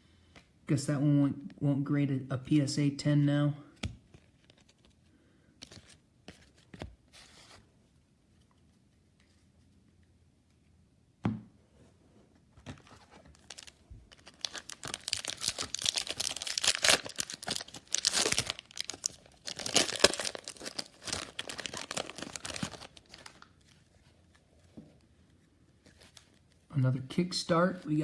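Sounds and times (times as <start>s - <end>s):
foil wrapper tearing and crinkling: 13.4s - 23.5s.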